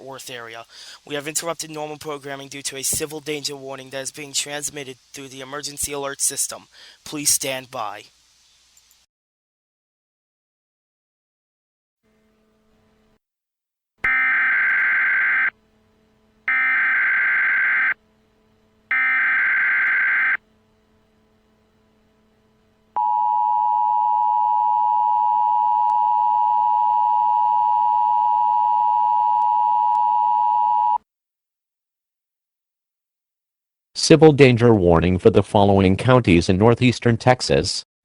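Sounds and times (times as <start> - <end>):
steady two-tone alert signal: 14.0 - 15.6, 16.5 - 18.0, 18.9 - 20.4
screeching digital data tones: 14.1 - 15.5, 16.5 - 18.0, 18.9 - 20.4.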